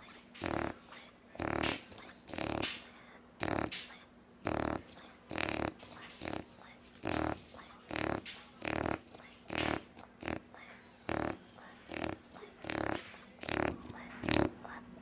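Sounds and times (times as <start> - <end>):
dog snoring: 0.0 - 14.7.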